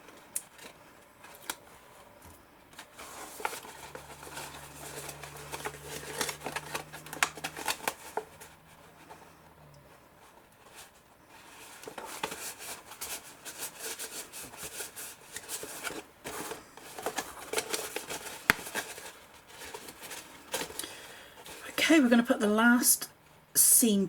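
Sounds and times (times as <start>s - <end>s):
paper rustling: 2.8s - 9.3s, 10.2s - 20.8s.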